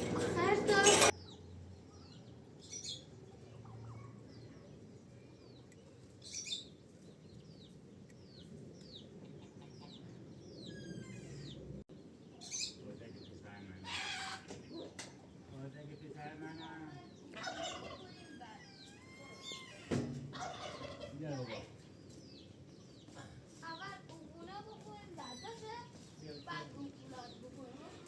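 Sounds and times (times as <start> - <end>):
poultry chirping: 5.4 - 15.0, 16.1 - 23.1
rasping poultry calls: 13.8 - 14.6, 17.4 - 21.7.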